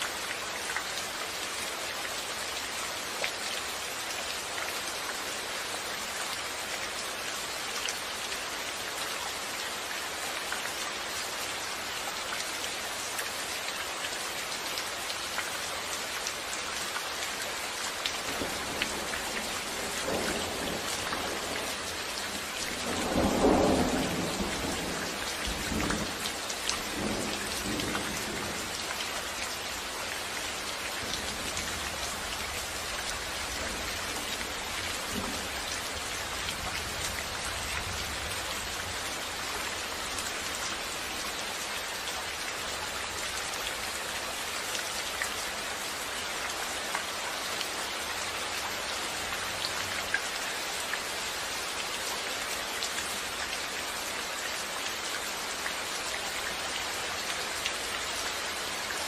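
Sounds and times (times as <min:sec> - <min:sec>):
heavy rain hissing: 0:16.5 - 0:43.9.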